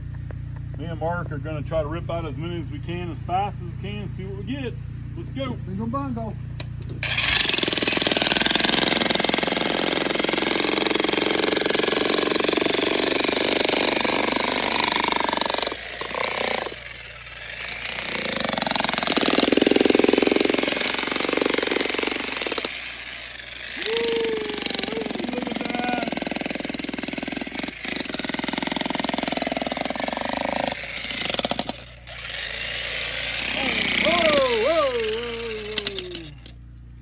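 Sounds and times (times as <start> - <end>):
jackhammer hammering into rock: 7.0 - 36.6.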